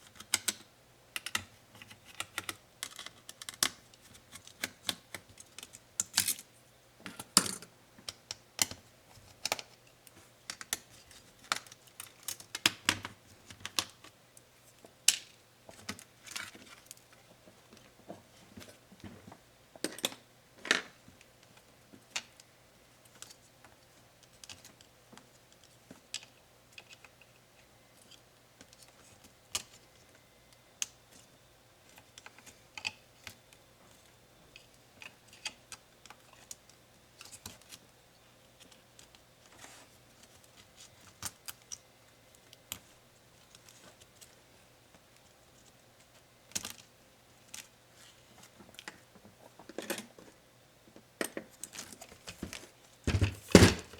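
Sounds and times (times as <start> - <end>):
laptop parts clicking and tapping: 0.0 - 6.4.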